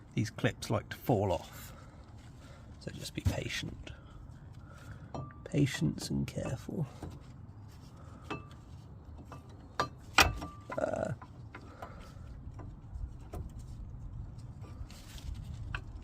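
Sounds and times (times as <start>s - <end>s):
brake pad metal clicks and clinks: 4.9s - 14.6s.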